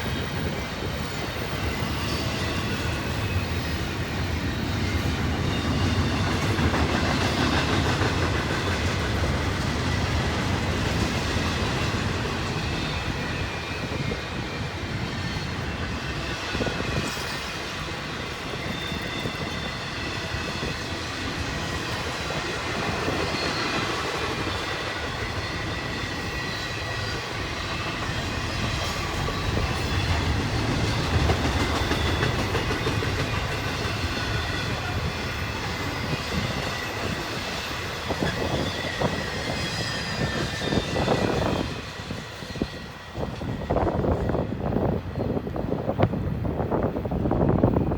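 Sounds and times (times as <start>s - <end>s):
faint high wheel squeal: 0.0s - 6.2s, 12.4s - 20.9s, 22.8s - 45.4s
train cars rolling past: 0.0s - 47.9s.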